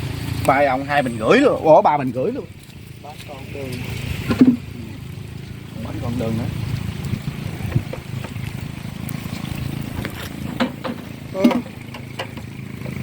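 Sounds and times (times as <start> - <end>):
voice: 0.4 - 5.0, 5.7 - 6.6, 11.3 - 11.8.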